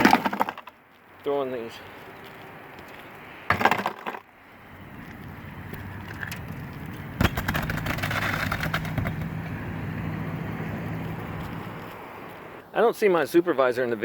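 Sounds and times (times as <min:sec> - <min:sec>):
vehicle engine driving past: 0:04.5 - 0:12.6.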